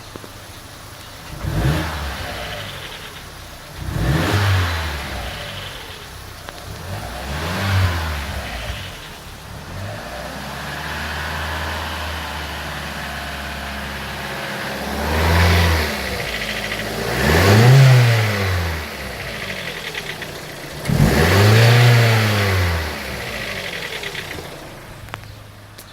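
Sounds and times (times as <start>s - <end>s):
car engine idling and revving: 0.0s - 25.9s.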